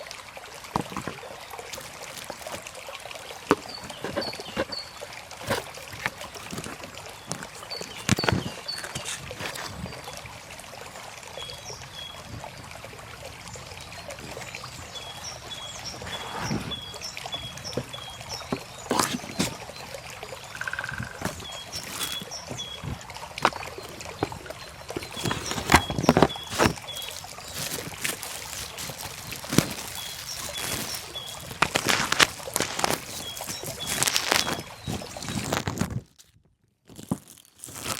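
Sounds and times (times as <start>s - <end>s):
bird chirping: 20.4s - 35.6s.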